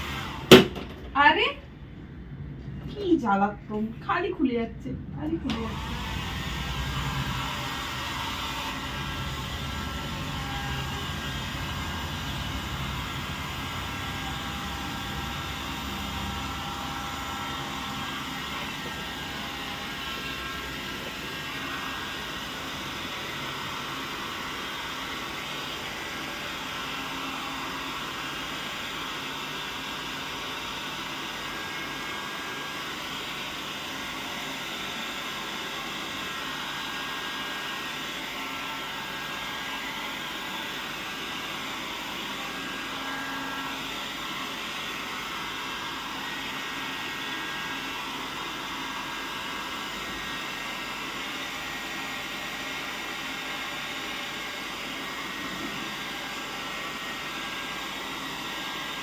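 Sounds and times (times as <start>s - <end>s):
hair dryer blowing: 0.0s - 59.0s
low rumble: 0.9s - 22.2s.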